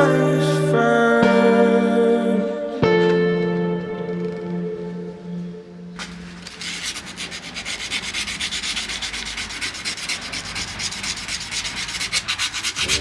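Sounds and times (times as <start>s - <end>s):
rapid hand rubbing: 6.0s - 13.0s.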